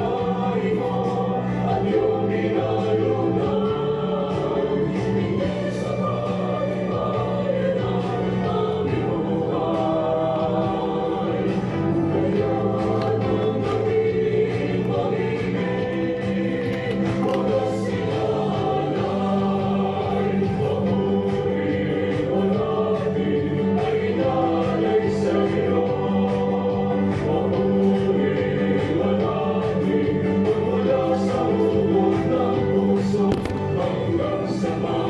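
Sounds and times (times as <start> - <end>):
gospel choir singing: 0.0 - 35.0.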